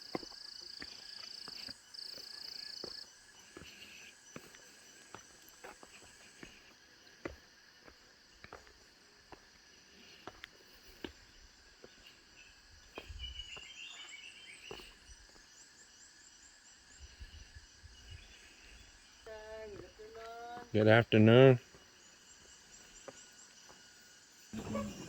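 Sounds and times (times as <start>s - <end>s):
insects buzzing: 0.0s - 25.0s
bird chirps: 24.5s - 25.0s.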